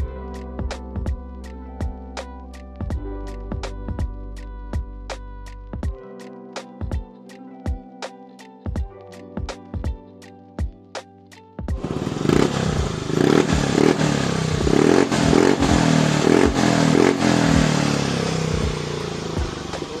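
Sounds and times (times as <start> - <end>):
scooter engine revving: 11.8 - 20.0.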